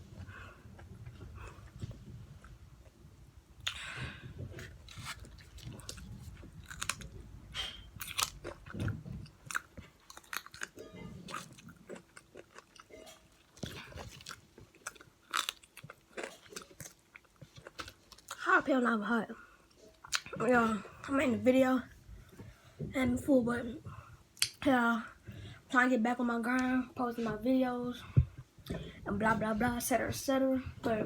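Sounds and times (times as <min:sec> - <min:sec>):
crunchy chewing: 0:04.6 - 0:18.4.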